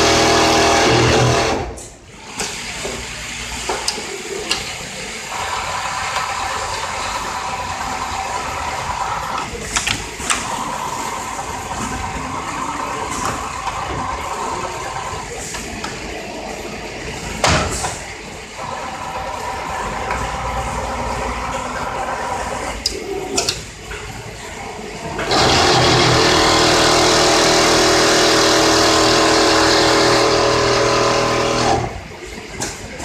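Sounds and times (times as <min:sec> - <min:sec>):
sewing machine hum: 0:00.0 - 0:15.4, 0:25.2 - 0:32.2.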